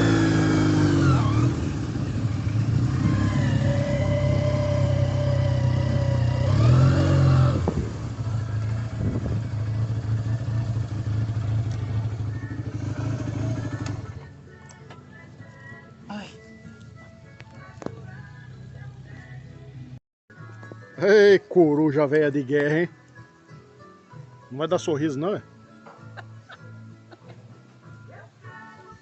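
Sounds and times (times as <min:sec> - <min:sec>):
motorcycle engine revving: 0:00.0 - 0:14.3.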